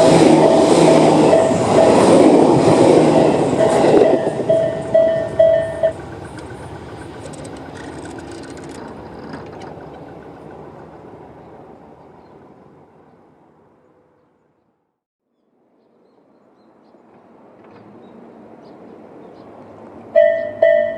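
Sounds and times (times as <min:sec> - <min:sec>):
electronic crossing warning bell: 0:00.0 - 0:02.0, 0:03.2 - 0:06.0, 0:20.2 - 0:20.9
train wheels clicking over rail joints: 0:00.0 - 0:12.2
train running past: 0:00.0 - 0:14.2, 0:17.0 - 0:20.9.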